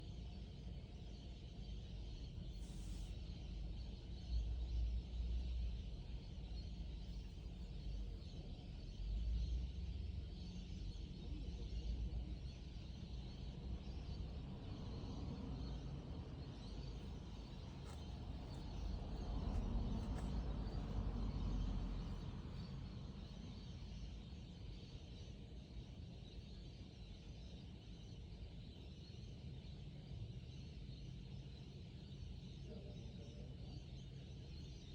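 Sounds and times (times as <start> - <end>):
steady low rumble: 15.6 - 24.1.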